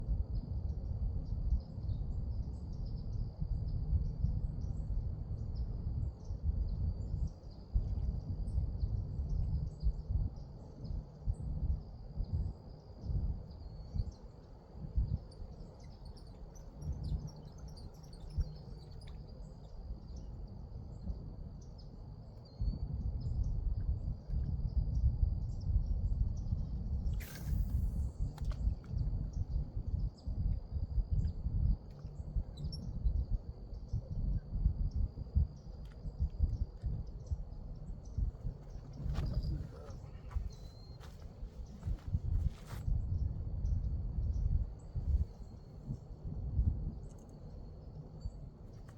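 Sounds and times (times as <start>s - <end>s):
wind on microphone: 0.0s - 48.9s
insect drone: 10.0s - 24.8s, 26.7s - 48.9s
bird chirps: 38.1s - 42.8s.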